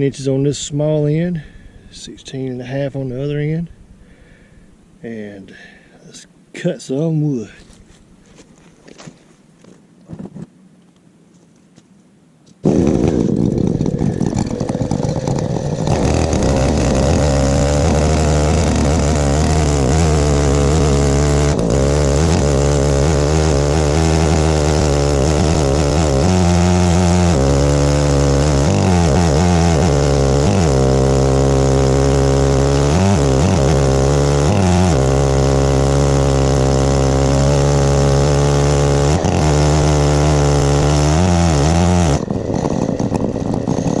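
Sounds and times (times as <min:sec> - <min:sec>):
chainsaw ripping a log: 0:12.6 - 0:44.0.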